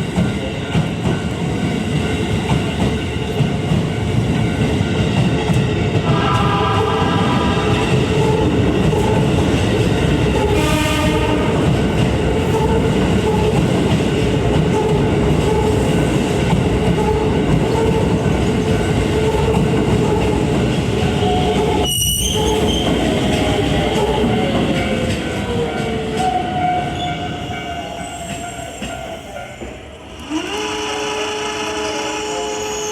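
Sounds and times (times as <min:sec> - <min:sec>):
train rumbling over rail joints: 0:00.0 - 0:32.3
brief horn-like tone: 0:06.1 - 0:08.0.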